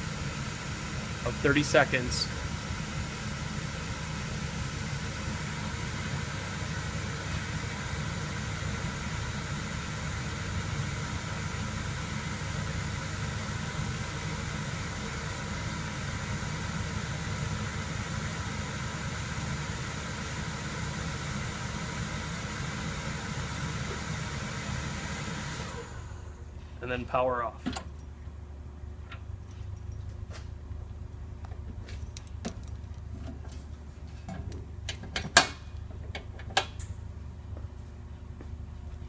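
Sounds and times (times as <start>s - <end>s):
burner blower humming and hissing: 0.0s - 39.0s.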